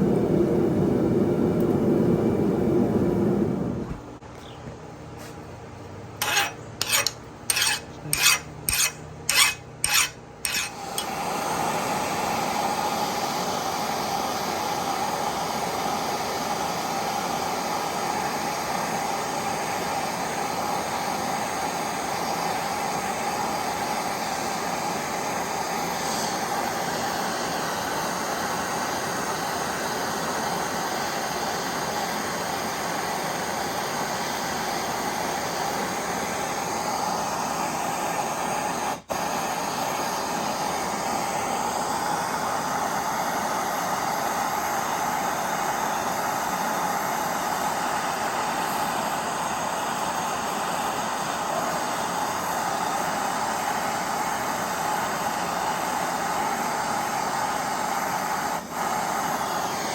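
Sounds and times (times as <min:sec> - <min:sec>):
scraping on metal: 0:06.2 - 0:11.1
rushing hiss: 0:10.6 - 0:59.9.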